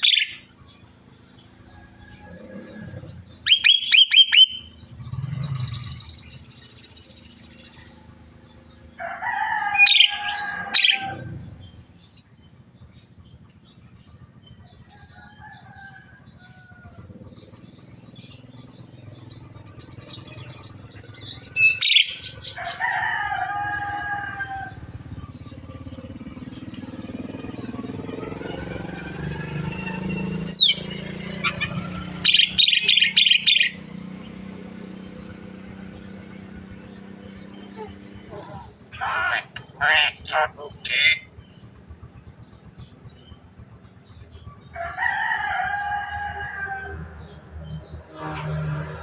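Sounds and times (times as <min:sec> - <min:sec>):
bird whistling calls: 0:00.0 - 0:00.4, 0:03.4 - 0:08.0, 0:19.3 - 0:22.5, 0:31.4 - 0:33.8
bird harsh rasping call: 0:00.0 - 0:00.5, 0:02.2 - 0:08.1, 0:09.0 - 0:12.4, 0:14.9 - 0:26.9, 0:30.4 - 0:33.9, 0:37.5 - 0:41.5.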